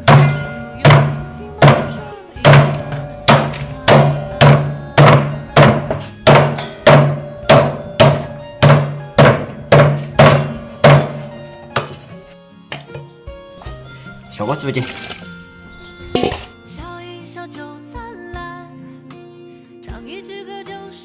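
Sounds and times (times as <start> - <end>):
cleaver chopping on wooden board: 0.0 - 12.1
background music: 0.0 - 21.0.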